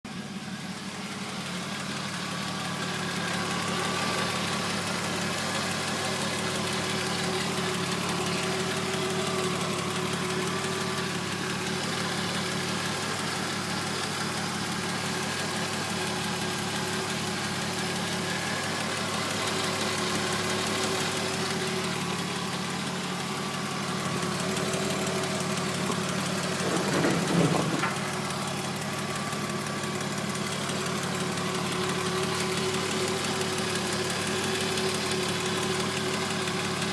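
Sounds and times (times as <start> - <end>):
car engine idling: 0.1 - 36.9
rhythmic clacking from exhaust: 22.8 - 33.9.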